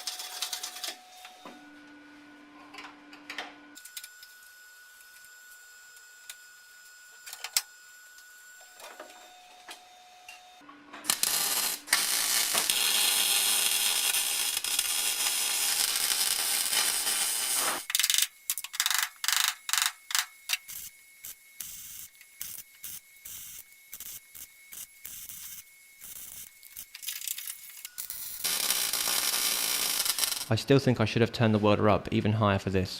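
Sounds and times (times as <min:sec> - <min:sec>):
welding arc crackling and hissing: 0:11.0 - 0:30.6.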